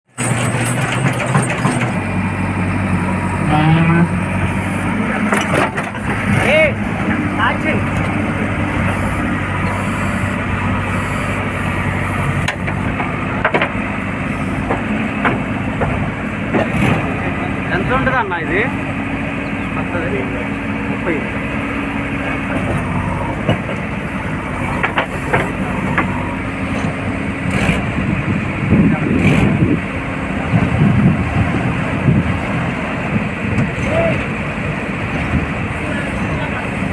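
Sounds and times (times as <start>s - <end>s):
diesel engine running: 0.0s - 36.9s
sharp metallic clanks: 0.1s - 2.1s.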